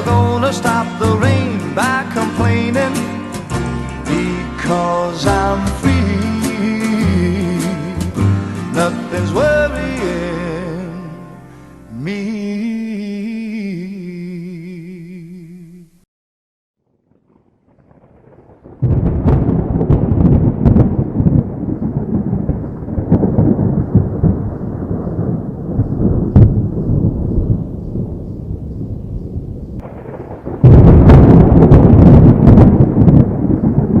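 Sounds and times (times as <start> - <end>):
song: 0.0 - 15.8
thunder rumbling with sharp cracks: 16.9 - 34.0.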